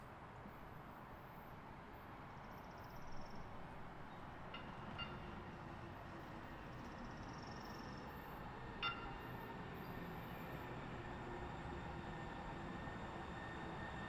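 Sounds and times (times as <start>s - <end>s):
light rail train rumble: 0.1s - 14.0s.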